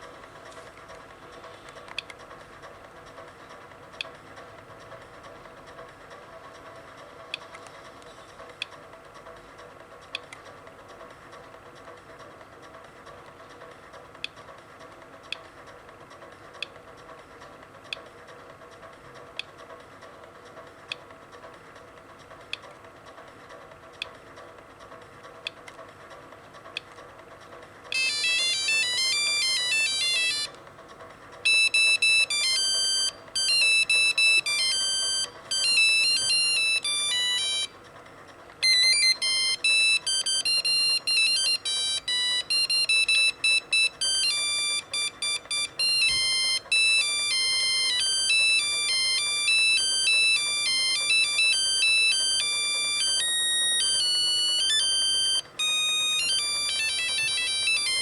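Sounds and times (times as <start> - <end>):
phone ringtone beeping tunes: 28.0 - 30.6, 31.4 - 37.7, 38.6 - 58.0.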